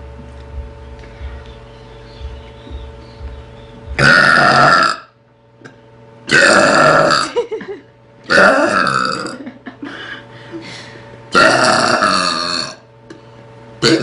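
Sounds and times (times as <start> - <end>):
woman belching loudly: 4.0 - 5.2, 6.3 - 7.4, 8.3 - 9.5, 11.3 - 12.8.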